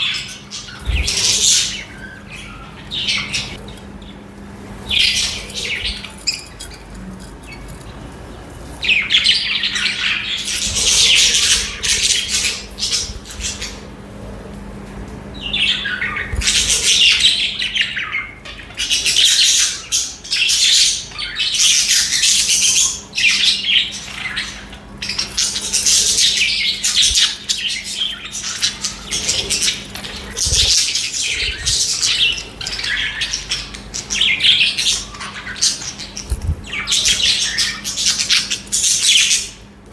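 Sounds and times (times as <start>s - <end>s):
budgerigars chirping: 0.0s - 3.6s, 8.8s - 13.8s, 15.4s - 39.7s.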